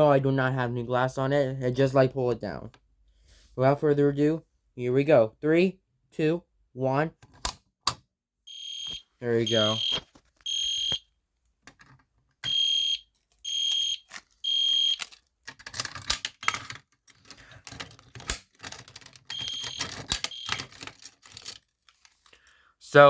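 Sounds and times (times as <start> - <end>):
fire alarm horn blasts: 8.5 - 11.0, 12.5 - 15.0, 19.3 - 20.6.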